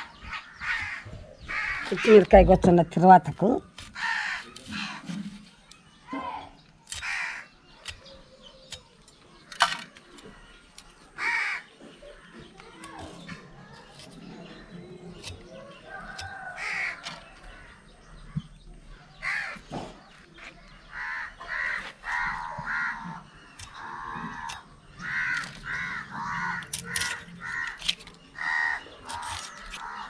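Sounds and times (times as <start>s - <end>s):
crow cawing: 0.2s - 2.1s, 4.0s - 5.0s, 7.0s - 7.5s, 11.2s - 11.7s, 16.3s - 17.0s, 19.2s - 19.6s, 20.9s - 30.0s
sharp clicks: 23.5s - 25.9s.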